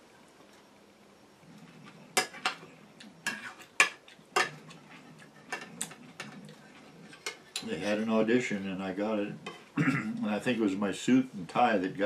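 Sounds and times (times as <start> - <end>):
cutlery clinking on a plate: 3.3 - 6.5.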